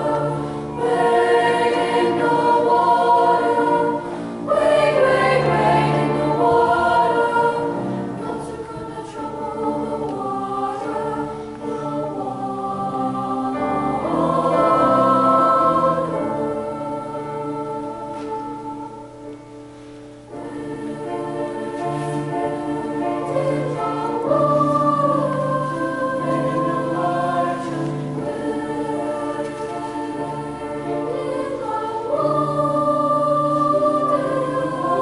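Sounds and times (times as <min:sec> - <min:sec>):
choir singing sustained chords: 0:00.0 - 0:35.0.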